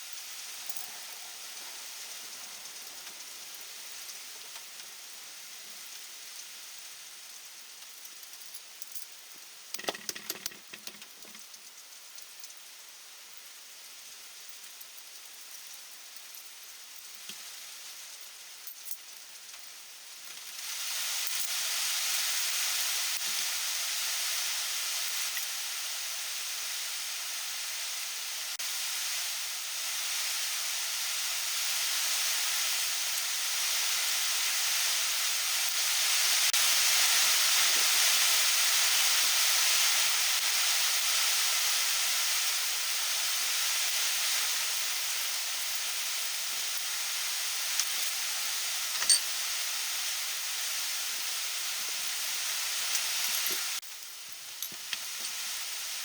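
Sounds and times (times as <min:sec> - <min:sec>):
loud steady hiss: 0:00.0 - 0:56.0
heavy rain falling: 0:00.5 - 0:05.7.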